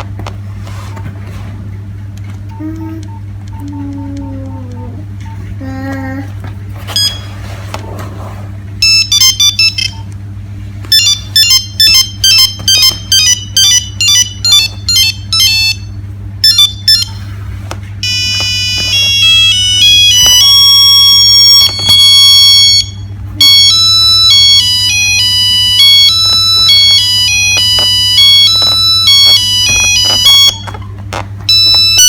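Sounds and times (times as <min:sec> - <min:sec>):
steady low hum: 0:00.0 - 0:32.0
mobile phone beeping ringtone: 0:08.8 - 0:10.0, 0:10.9 - 0:17.2, 0:18.0 - 0:30.8, 0:31.5 - 0:32.0.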